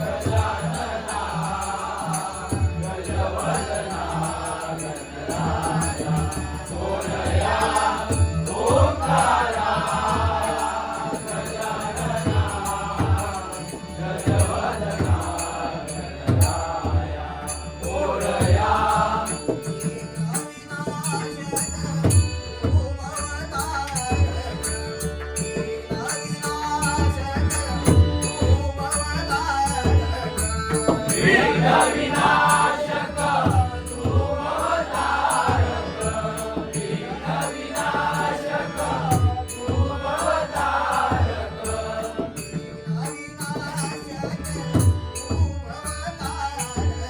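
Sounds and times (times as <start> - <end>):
person singing devotional song: 0.0 - 47.0.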